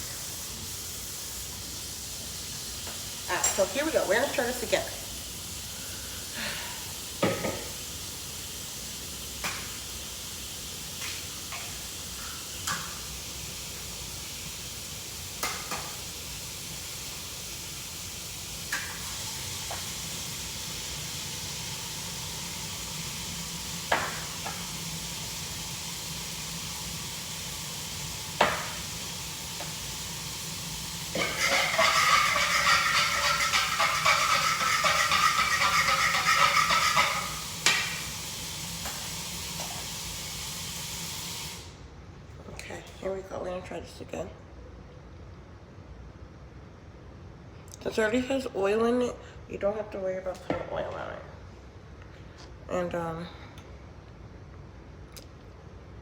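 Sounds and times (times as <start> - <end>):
egg sizzling in a frying pan: 0.0 - 41.8
rough frying and stirring: 31.0 - 38.3
utensil knocking against pan: 31.2 - 37.8.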